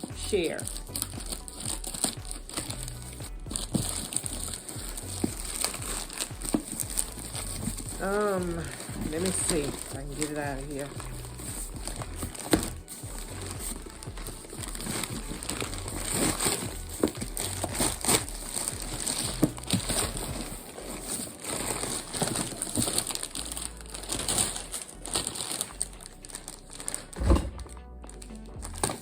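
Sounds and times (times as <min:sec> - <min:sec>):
packaging crinkling and rustling: 0:00.0 - 0:29.0
thump: 0:27.2 - 0:27.7.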